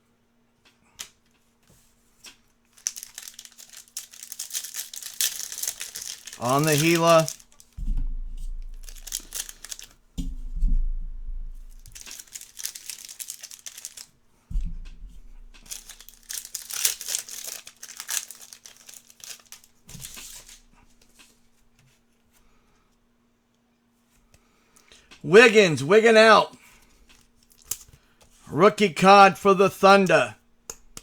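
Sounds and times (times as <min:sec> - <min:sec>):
card pack wrappers tearing: 0:02.7 - 0:07.8, 0:08.8 - 0:09.9, 0:11.9 - 0:14.1, 0:15.6 - 0:20.6
wrapper crinkling and rustling: 0:02.7 - 0:07.8, 0:08.7 - 0:09.9, 0:11.7 - 0:14.1, 0:15.6 - 0:20.6, 0:27.2 - 0:27.9
low handling thuds: 0:07.8 - 0:08.9.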